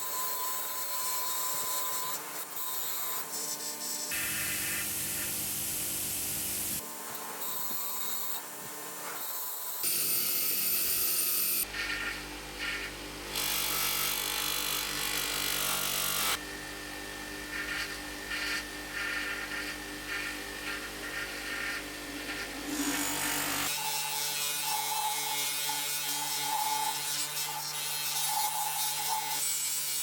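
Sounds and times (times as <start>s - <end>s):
power tool grinding metal: 7.1s - 16.4s, 17.2s - 30.0s.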